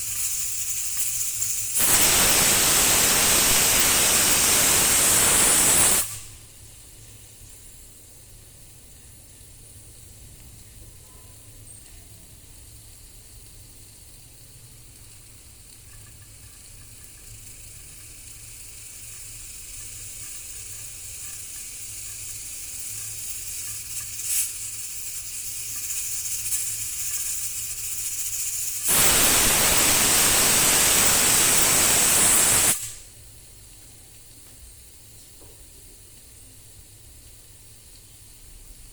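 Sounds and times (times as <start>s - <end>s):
pressure cooker steam hissing: 0.0s - 6.7s, 15.3s - 33.2s.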